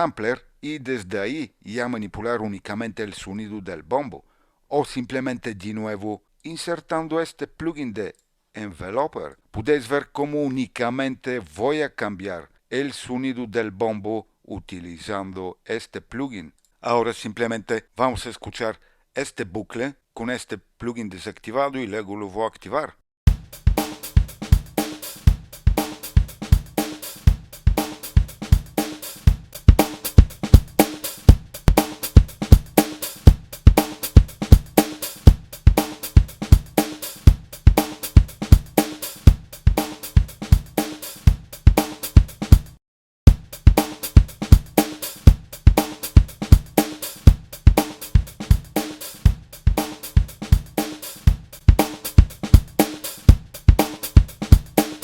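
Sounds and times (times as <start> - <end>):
funk drum loop: 23.3 - 55.0.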